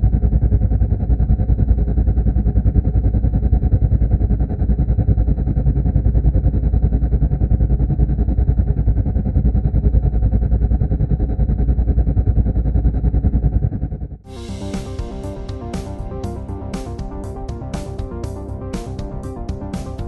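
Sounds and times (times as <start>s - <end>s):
helicopter engine and rotor: 9.4s - 20.0s.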